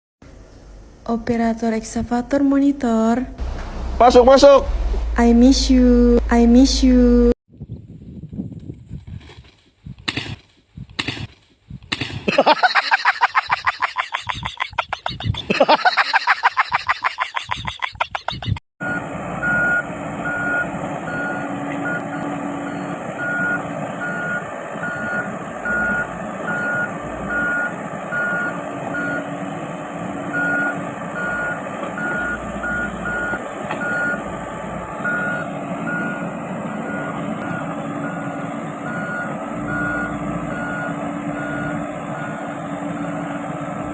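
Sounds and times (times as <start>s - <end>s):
excavator engine running: 3.3s - 7.4s, 12.0s - 43.9s
loud rapid pulsing: 3.4s - 7.3s
excavator alarm beeping: 18.8s - 29.4s, 30.2s - 43.6s.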